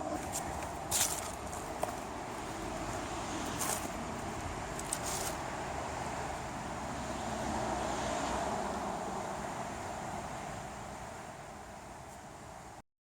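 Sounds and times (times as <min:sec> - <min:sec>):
rustles or footsteps: 0:00.0 - 0:05.5
road traffic noise: 0:00.0 - 0:12.8.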